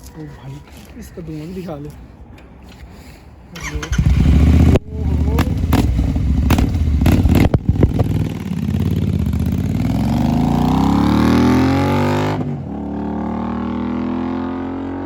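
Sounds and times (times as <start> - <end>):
exhaust crackles: 3.6 - 12.0
motorcycle engine revving: 3.6 - 15.0.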